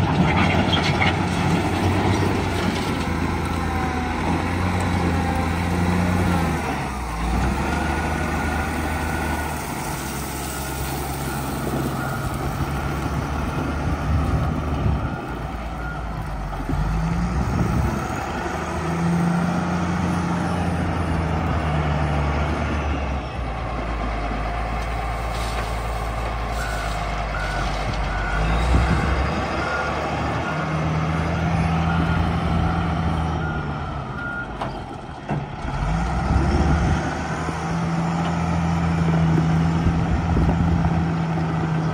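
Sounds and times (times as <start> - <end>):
diesel engine revving: 0.0 - 41.9
reversing alarm beeping: 26.5 - 34.7.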